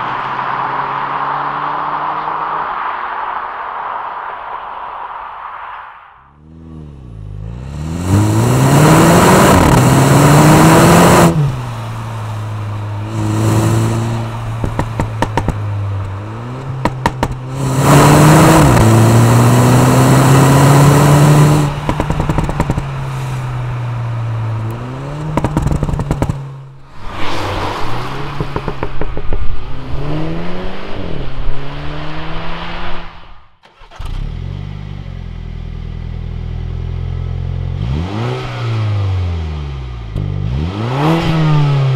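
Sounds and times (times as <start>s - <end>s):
car engine revving: 0.0s - 5.2s, 6.2s - 41.9s
exhaust pops and crackles: 14.1s - 17.6s, 21.5s - 23.2s, 24.6s - 26.8s, 28.1s - 29.9s.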